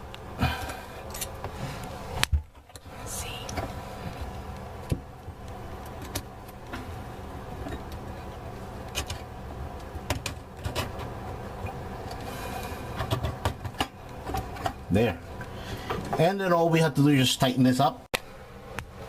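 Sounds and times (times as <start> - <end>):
steady low hum: 0.0 - 19.0
parts clicking and knocking: 12.9 - 14.8.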